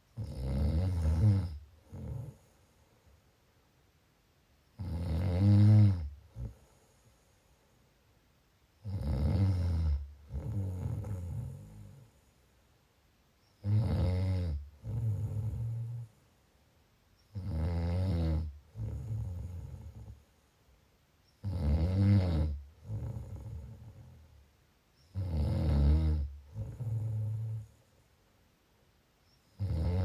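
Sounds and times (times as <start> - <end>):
loud snoring: 0.2 - 2.4, 4.8 - 6.6, 8.8 - 12.1, 13.6 - 16.1, 17.3 - 20.2, 21.4 - 24.2, 25.1 - 27.7, 29.6 - 30.0.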